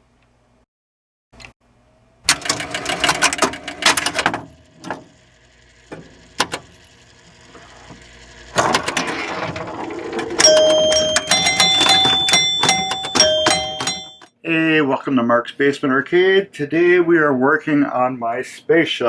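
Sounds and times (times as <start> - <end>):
mechanical clicking and rattling: 2.3 - 13.2.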